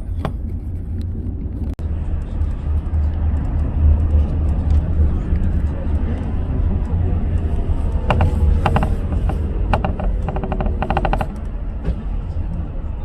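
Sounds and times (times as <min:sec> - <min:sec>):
car road rumble: 0:00.0 - 0:13.0
rapid clicking rattle: 0:07.2 - 0:11.5.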